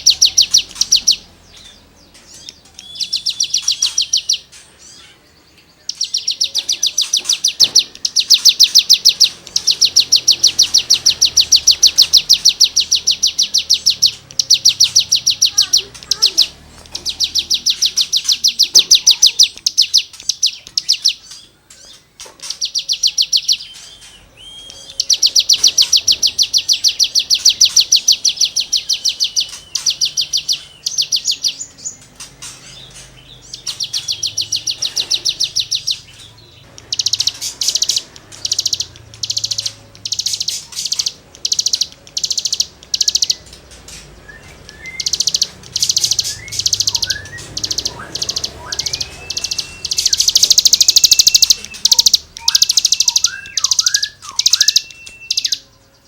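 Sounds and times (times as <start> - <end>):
songbird singing scratchy notes: 0.0 - 56.0.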